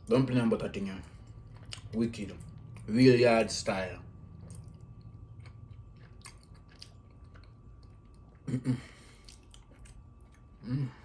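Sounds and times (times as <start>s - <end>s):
person chewing food: 1.0s - 3.0s, 4.1s - 10.9s.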